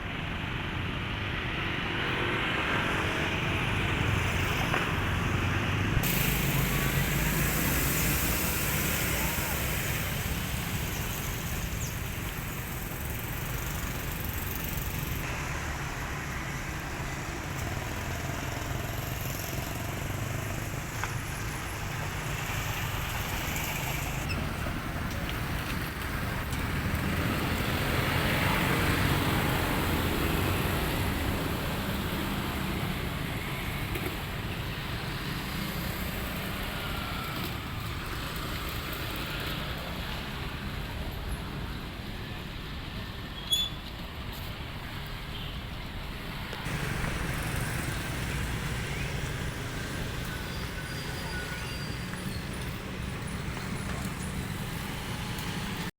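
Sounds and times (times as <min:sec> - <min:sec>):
vehicle rumble with hiss: 0:00.0 - 0:55.9.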